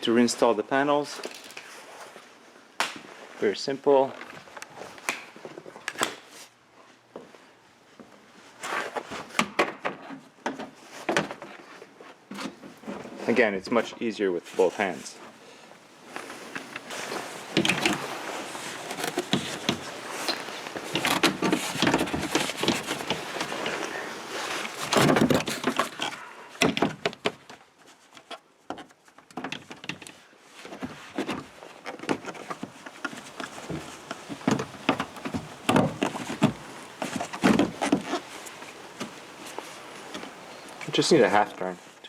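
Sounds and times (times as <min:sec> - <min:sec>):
trim panels clicking and knocking: 0:16.8 - 0:23.9, 0:32.1 - 0:40.8.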